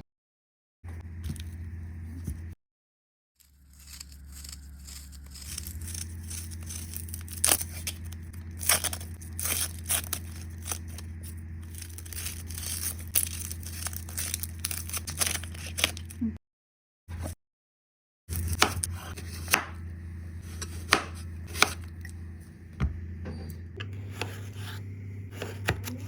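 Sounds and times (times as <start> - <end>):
steady low hum: 0.9 - 2.6, 3.5 - 16.4, 18.3 - 26.0
crinkling and tearing: 3.4 - 16.2.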